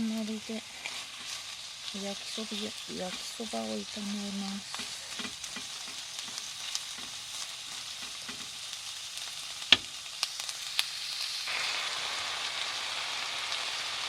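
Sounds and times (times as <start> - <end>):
food sizzling in a frying pan: 0.0 - 14.0
utensil clacking on pan: 4.7 - 8.6.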